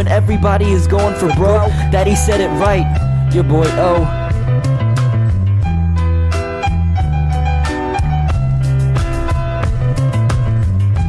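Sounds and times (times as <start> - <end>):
rapping: 0.0 - 4.2
hip-hop instrumental beat: 0.0 - 11.0.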